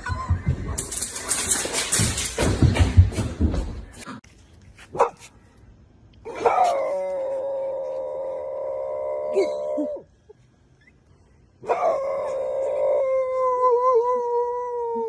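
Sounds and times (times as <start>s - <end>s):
dog howling: 11.7s - 15.0s.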